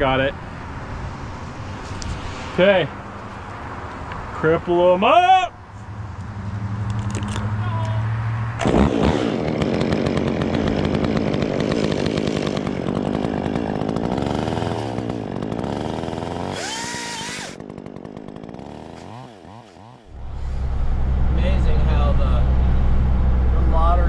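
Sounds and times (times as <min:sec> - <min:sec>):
chainsaw running at high revs: 0:08.6 - 0:20.7.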